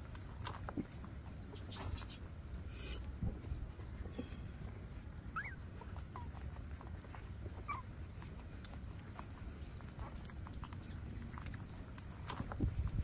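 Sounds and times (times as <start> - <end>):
puppies squeaking: 5.3 - 8.0
soft clicking noises: 5.6 - 13.0.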